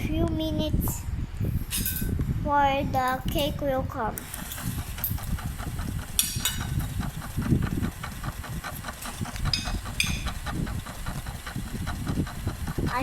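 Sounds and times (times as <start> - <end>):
rapid even ticking: 4.2 - 13.0
toy microwave humming: 4.2 - 13.0.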